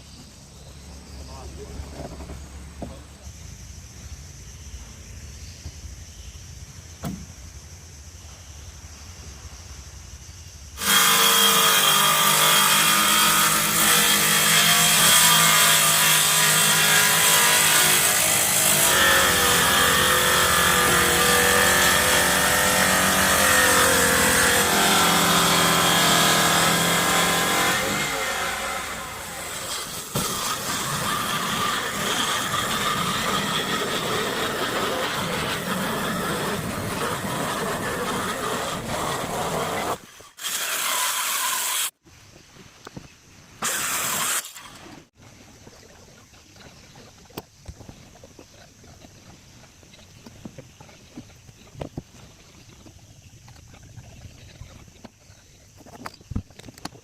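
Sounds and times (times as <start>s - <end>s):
power tool cutting wood: 10.8s - 42.0s, 43.6s - 44.9s.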